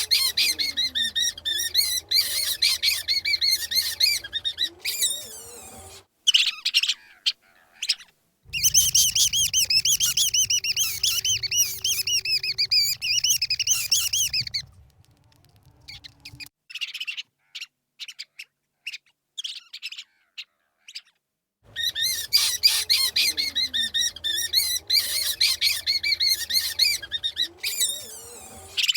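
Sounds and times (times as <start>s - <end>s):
rat squeaking: 0.0s - 7.0s, 7.8s - 16.5s, 21.7s - 28.9s
clicks: 8.5s - 16.5s.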